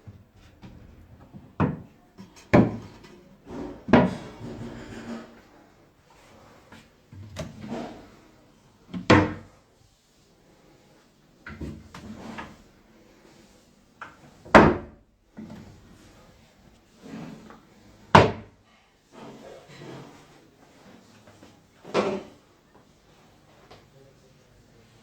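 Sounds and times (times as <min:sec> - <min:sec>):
cabinet doors and drawers shutting: 0:09.0 - 0:09.5, 0:14.5 - 0:15.0, 0:18.1 - 0:18.6.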